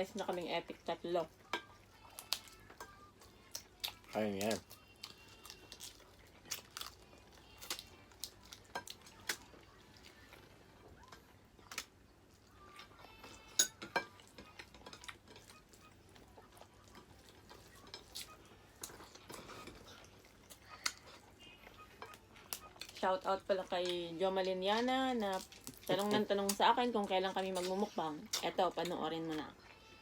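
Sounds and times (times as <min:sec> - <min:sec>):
cutlery clinking on plates: 0:13.4 - 0:15.5.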